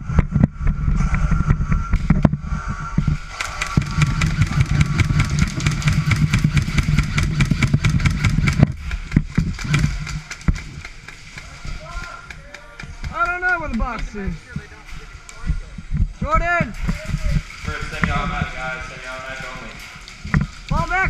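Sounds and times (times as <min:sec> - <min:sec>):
wind rumble on microphone: 0:00.0 - 0:10.1
footfalls and gear clattering: 0:03.1 - 0:21.0.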